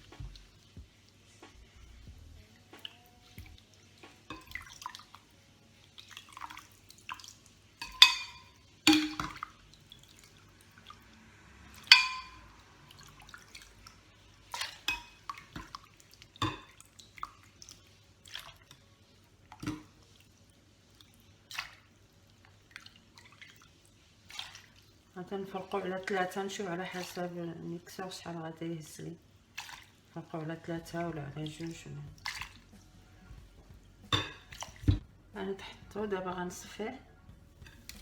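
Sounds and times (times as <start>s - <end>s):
small liquid splashes: 2.5s - 26.3s, 29.4s - 30.2s, 31.4s - 32.9s, 34.1s - 35.0s.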